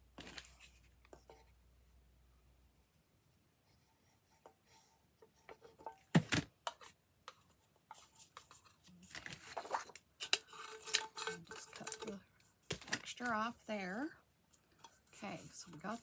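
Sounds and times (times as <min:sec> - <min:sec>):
paper rustling: 0:08.0 - 0:09.9.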